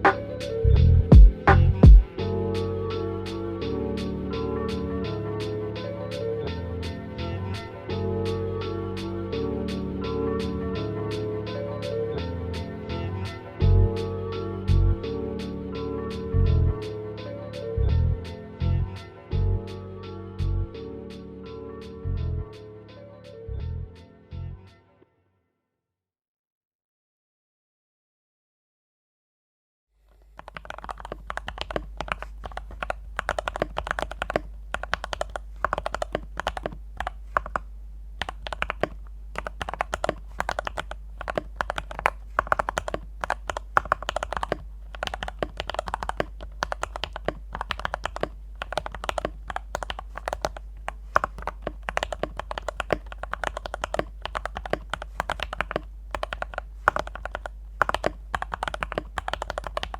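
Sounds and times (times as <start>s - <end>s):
mechanical keyboard typing: 30.1s - 59.9s.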